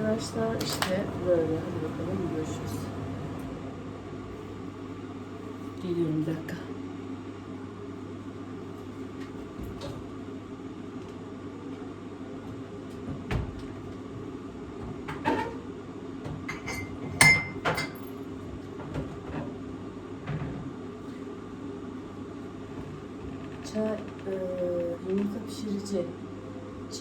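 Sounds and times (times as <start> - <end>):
steady low hum: 0.0 - 27.0
knocks and clinks on a counter: 16.5 - 18.1.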